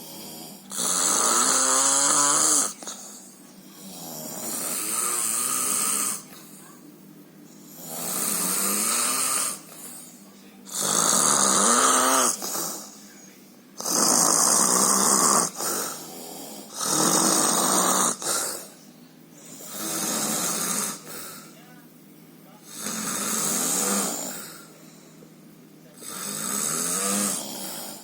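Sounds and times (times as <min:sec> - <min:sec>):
quiet breathing: 0:00.0 - 0:00.9, 0:02.6 - 0:10.9, 0:18.1 - 0:28.0
person snoring loudly: 0:00.0 - 0:03.1, 0:03.8 - 0:06.3, 0:07.7 - 0:09.7, 0:10.7 - 0:13.0, 0:13.8 - 0:18.7, 0:19.4 - 0:21.5, 0:22.7 - 0:24.7, 0:26.0 - 0:28.0.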